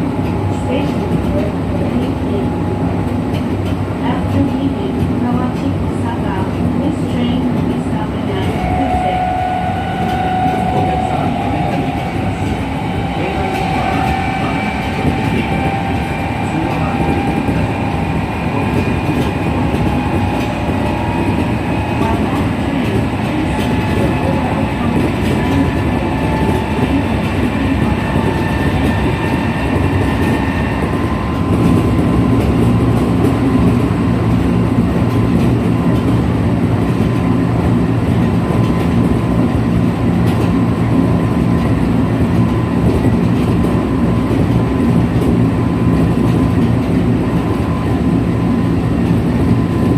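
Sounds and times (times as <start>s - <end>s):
wheel and rail noise: 0.0s - 49.9s.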